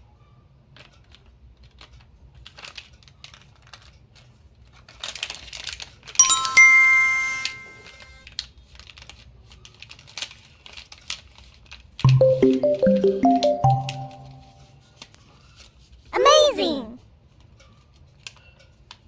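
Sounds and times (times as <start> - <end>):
bright bell-like chime: 6.2 - 8.2, 12.1 - 14.5.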